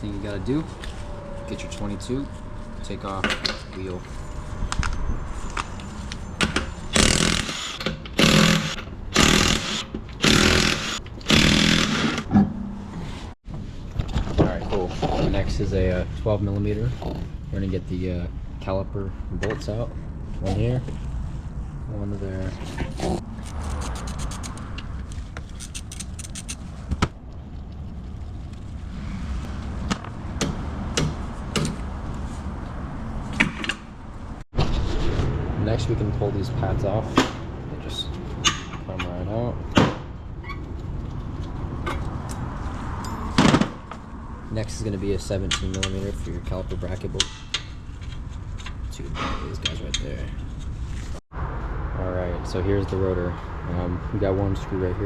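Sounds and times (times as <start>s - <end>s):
steady low rumble: 0.0s - 7.0s, 15.3s - 33.2s
impact wrench bursts: 6.9s - 12.3s.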